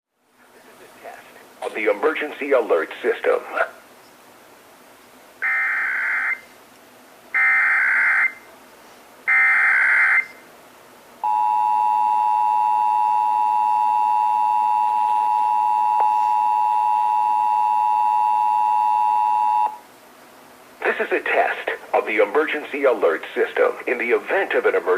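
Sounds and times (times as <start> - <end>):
two-tone alert signal: 11.2 - 19.8.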